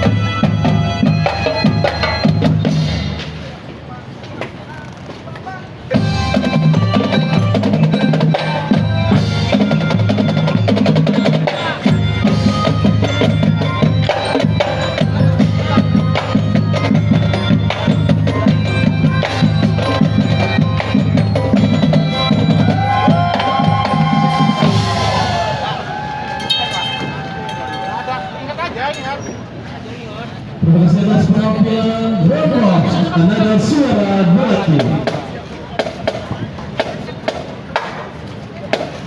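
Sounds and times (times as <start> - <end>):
marching band playing: 0.0 - 3.7, 5.8 - 28.8, 30.6 - 39.0
marching drums beat: 5.9 - 28.2, 32.5 - 38.1.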